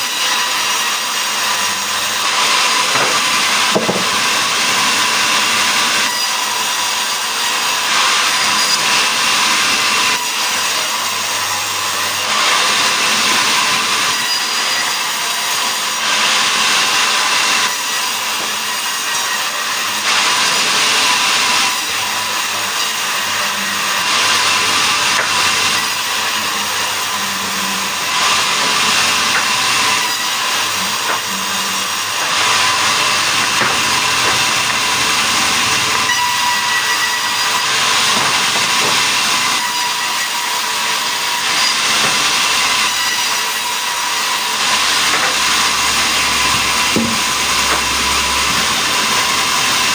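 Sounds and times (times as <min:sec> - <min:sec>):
sawmill saw cutting log: 0:00.0 - 0:49.9.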